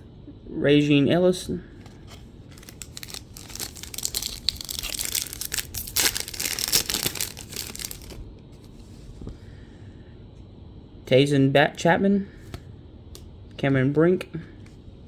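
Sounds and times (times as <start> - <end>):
foil wrapper crinkling and tearing: 2.5 - 8.2.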